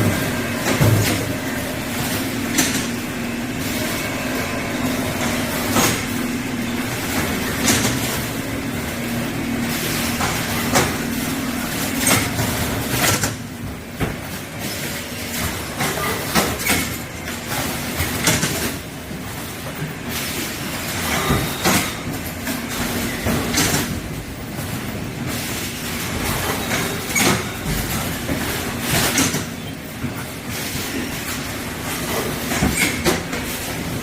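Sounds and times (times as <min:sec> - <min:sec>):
machine clacks and knocks: 0:00.0 - 0:08.7, 0:09.7 - 0:34.0
machine motor hum: 0:00.0 - 0:14.0.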